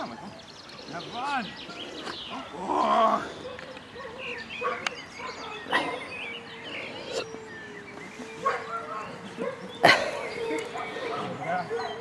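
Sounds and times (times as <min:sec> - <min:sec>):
dog barking: 0:03.4 - 0:06.1, 0:08.4 - 0:12.0.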